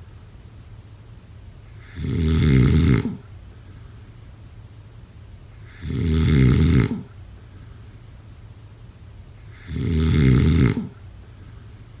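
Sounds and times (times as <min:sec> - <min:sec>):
quiet breathing: 0:01.6 - 0:04.2, 0:05.5 - 0:08.2, 0:09.4 - 0:12.0
loud snores: 0:01.8 - 0:03.3, 0:05.6 - 0:07.2, 0:09.5 - 0:11.0.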